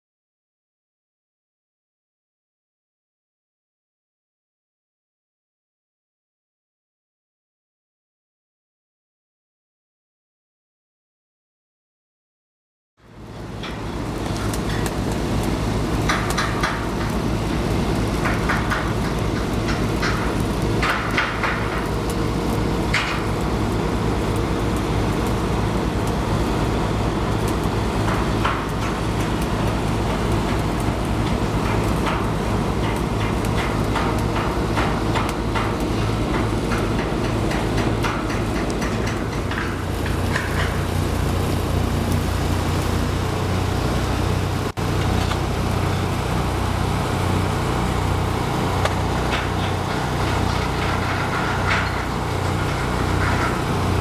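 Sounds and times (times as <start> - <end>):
crackling bursts: 14.0 - 54.0.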